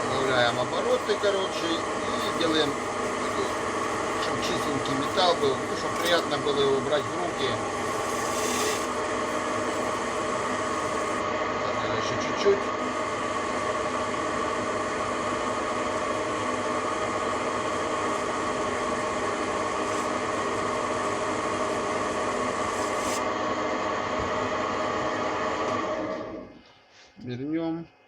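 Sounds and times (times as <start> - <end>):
lathe machine hum: 0.0 - 26.6
rasping of tool on metal: 7.9 - 8.9.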